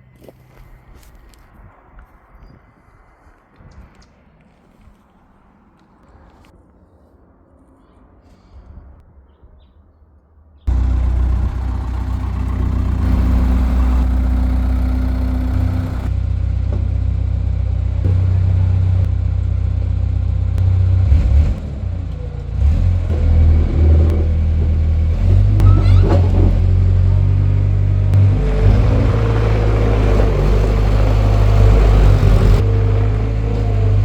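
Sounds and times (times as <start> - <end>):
steady whine: 10.7 - 16.2
diesel engine running: 10.7 - 34.0.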